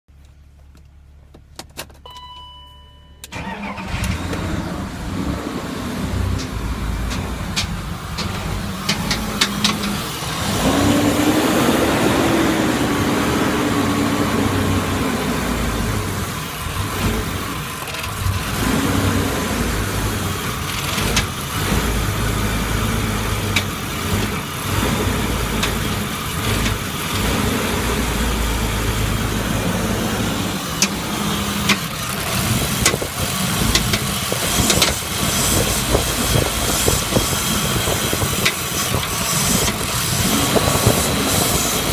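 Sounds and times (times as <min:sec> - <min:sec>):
car engine idling: 0:03.3 - 0:41.9
engine knocking clicks: 0:06.4 - 0:10.0, 0:31.7 - 0:41.0.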